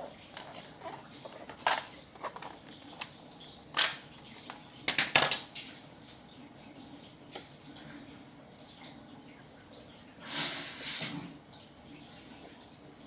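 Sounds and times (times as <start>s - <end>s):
screwdriver set clattering: 0.4s - 3.1s, 3.8s - 5.4s.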